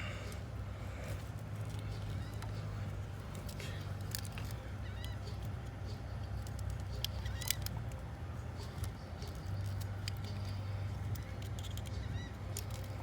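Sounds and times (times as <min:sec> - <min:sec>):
steady low hum: 0:00.0 - 0:13.0
faint plastic squeaks: 0:01.6 - 0:08.0, 0:08.6 - 0:13.0
small plastic clicks: 0:06.4 - 0:08.0.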